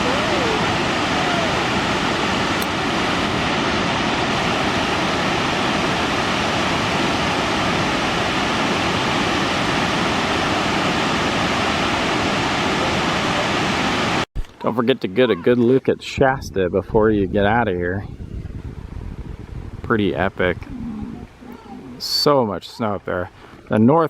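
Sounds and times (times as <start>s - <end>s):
waterfall rushing into a pool: 0.0s - 14.3s.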